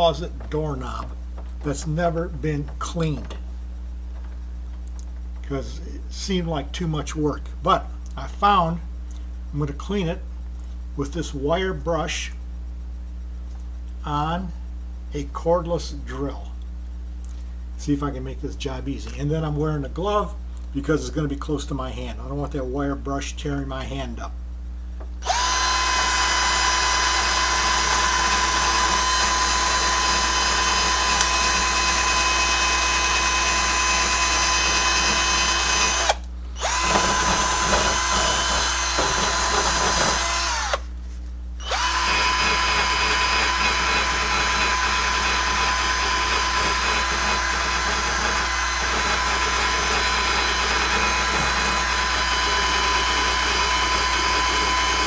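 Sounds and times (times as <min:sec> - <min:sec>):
drill with wire brush whining: 0:25.2 - 0:40.9, 0:41.6 - 0:55.0.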